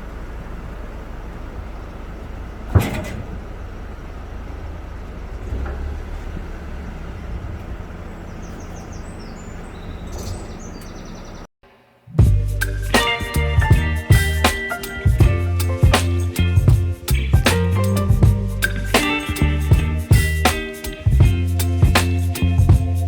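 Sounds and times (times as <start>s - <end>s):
vehicle engine running: 0.0s - 11.5s, 12.2s - 23.0s
scrap metal clang: 2.8s - 3.4s.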